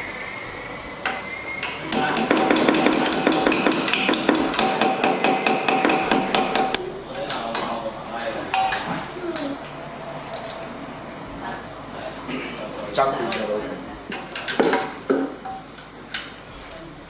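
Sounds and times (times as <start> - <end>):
hammer blows on metal: 1.0 - 6.8.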